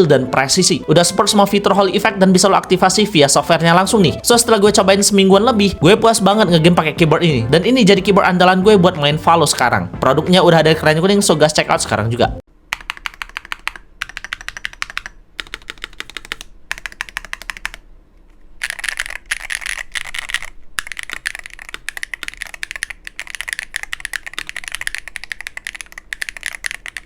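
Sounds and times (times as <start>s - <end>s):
keyboard typing: 12.7s - 17.8s, 18.6s - 27.0s.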